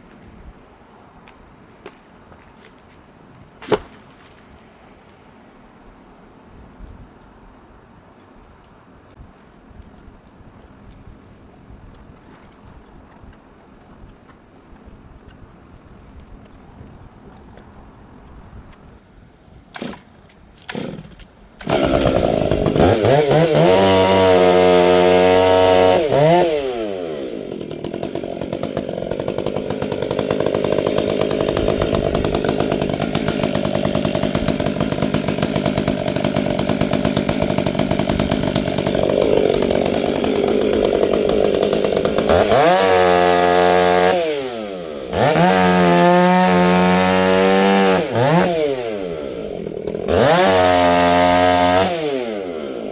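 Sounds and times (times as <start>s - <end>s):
chainsaw revving and cutting wood: 19.8s - 52.9s.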